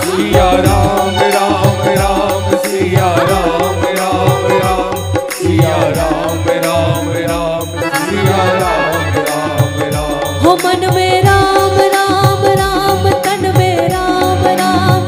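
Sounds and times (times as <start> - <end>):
devotional music with drum beat: 0.0 - 15.0.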